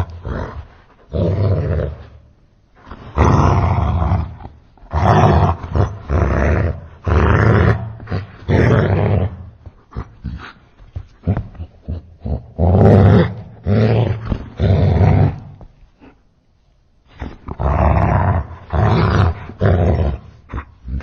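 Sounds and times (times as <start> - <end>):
slowed dog barking and growling: 0.0 - 16.3.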